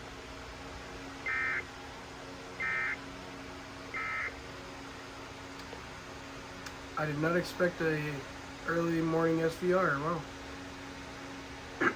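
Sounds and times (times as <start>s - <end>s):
radio hum: 1.2s - 1.7s, 2.6s - 3.0s, 3.9s - 4.4s
digital data tone bursts: 2.6s - 3.0s.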